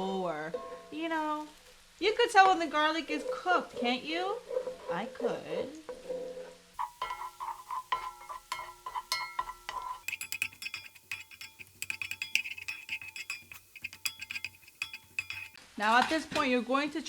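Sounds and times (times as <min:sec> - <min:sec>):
spatula clinking on frying pan: 0:06.8 - 0:15.6.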